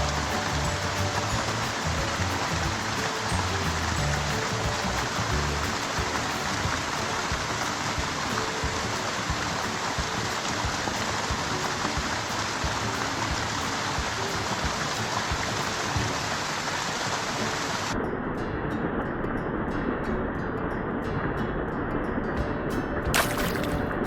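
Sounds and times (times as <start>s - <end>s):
stream water rushing over rocks: 0.0s - 18.0s, 23.1s - 24.0s.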